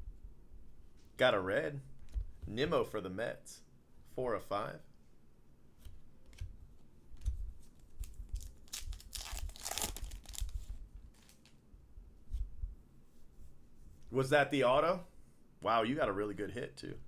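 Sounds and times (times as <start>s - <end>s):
packaging ripping and crinkling: 7.8s - 11.6s.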